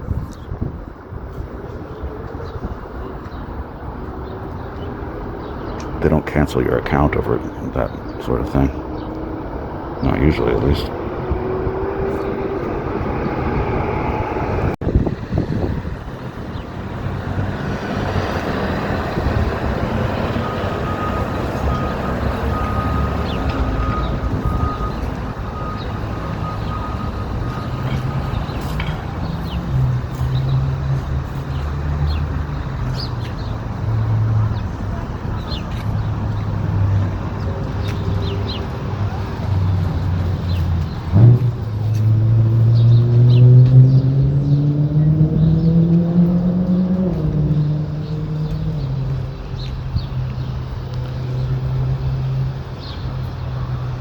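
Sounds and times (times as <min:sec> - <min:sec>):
passing cars and trucks: 0:00.0 - 0:54.0
road noise: 0:00.0 - 0:54.0
heavy engine low drone: 0:06.0 - 0:31.4.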